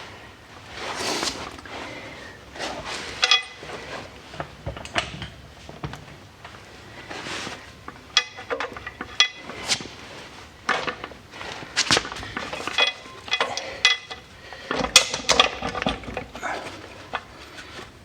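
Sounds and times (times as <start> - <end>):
metal clinks and knocks: 3.2 - 3.8, 7.8 - 9.6, 11.9 - 17.6.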